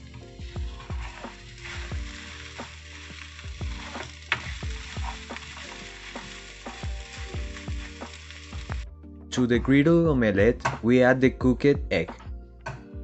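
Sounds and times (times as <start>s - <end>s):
food sizzling in hot oil: 0.0s - 8.9s
background music with beat: 0.0s - 13.0s.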